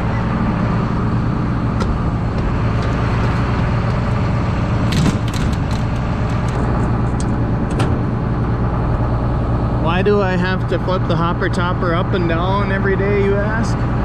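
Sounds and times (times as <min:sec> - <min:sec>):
diesel engine running: 0:00.0 - 0:14.0
sharp clicks and knocks: 0:04.9 - 0:08.1.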